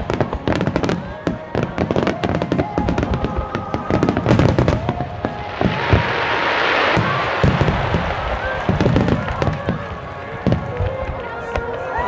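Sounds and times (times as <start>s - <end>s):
fireworks bangs and crackles: 0.0s - 12.0s
music playing: 0.0s - 12.0s.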